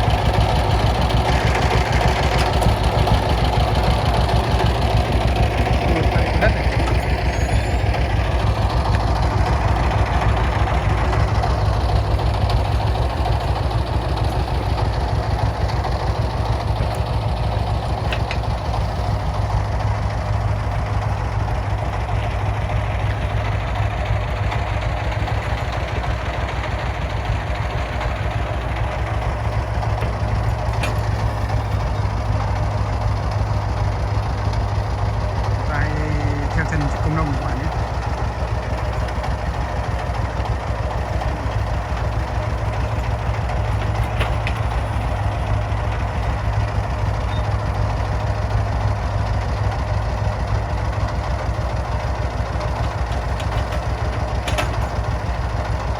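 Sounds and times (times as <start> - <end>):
diesel engine idling: 0.0 - 55.9.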